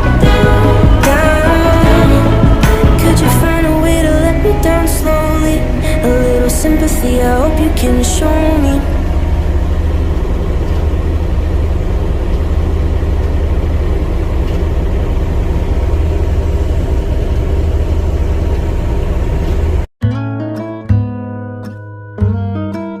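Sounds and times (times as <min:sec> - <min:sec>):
heavy diesel engine droning: 0:00.0 - 0:19.9.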